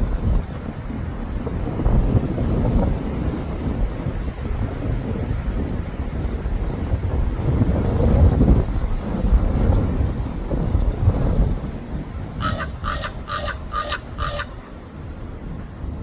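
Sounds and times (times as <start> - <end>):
low microphone rumble: 0.0 - 16.0
raven croaking: 12.4 - 14.8.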